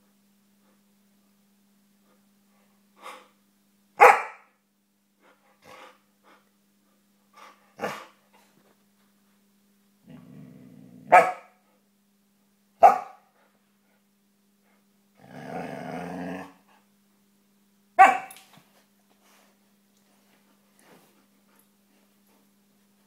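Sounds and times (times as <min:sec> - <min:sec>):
dog grumbling: 0:15.2 - 0:16.6.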